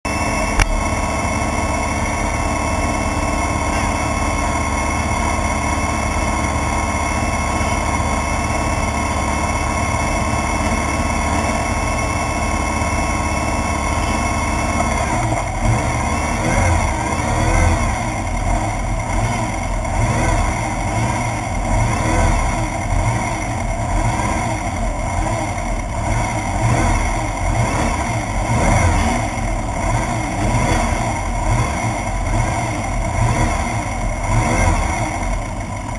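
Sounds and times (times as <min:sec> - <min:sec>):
buggy engine idling and revving: 0:00.0 - 0:35.9.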